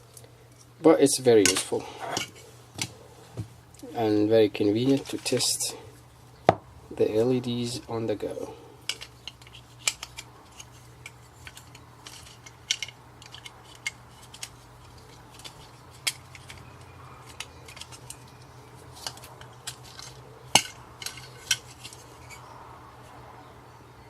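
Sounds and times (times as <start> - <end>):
faint steady hum: 0.0 - 24.0
small hard objects clattering: 8.9 - 22.4.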